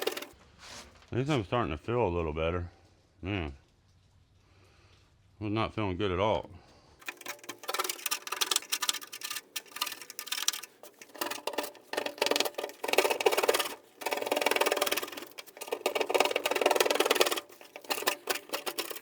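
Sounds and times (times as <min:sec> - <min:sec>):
hand scraper rasping on metal: 0:00.0 - 0:00.3, 0:07.0 - 0:19.0.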